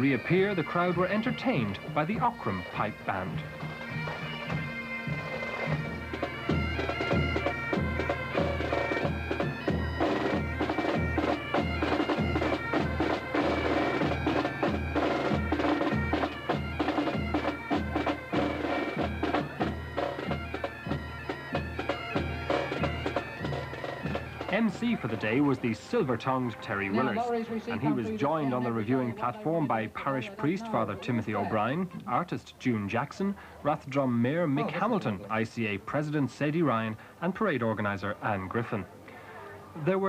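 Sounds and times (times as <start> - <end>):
bagpipes playing melody over drones: 0.0 - 31.8.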